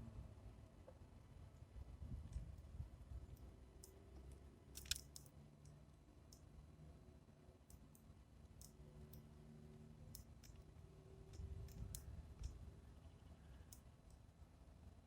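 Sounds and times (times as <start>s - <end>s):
sparrows pecking seed clicks: 3.8s - 6.5s.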